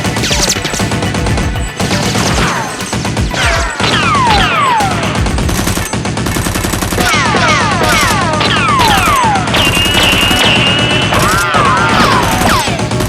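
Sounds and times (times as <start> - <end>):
background music: 0.0 - 13.0
rapid gunfire: 0.0 - 13.0
falling whistling tones: 9.5 - 12.5.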